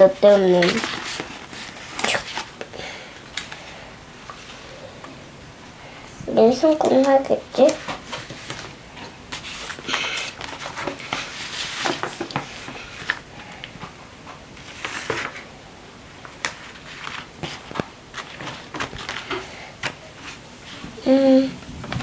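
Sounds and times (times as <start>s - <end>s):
paper rustling and crinkling: 0.0s - 2.7s, 6.6s - 15.5s, 16.1s - 21.0s.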